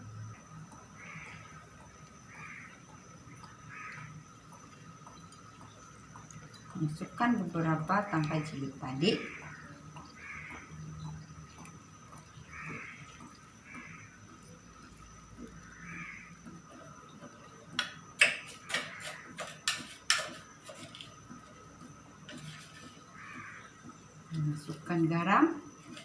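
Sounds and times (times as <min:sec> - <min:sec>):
kitchen clicks and knocks: 0:17.8 - 0:21.0.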